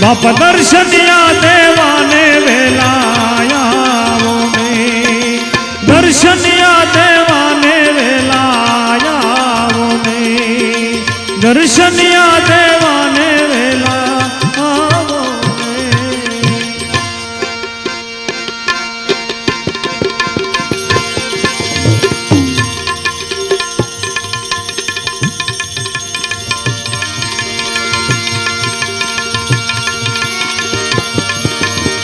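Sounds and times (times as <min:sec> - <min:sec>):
tabla playing: 0:00.0 - 0:32.0
sustained melodic notes: 0:19.0 - 0:24.8.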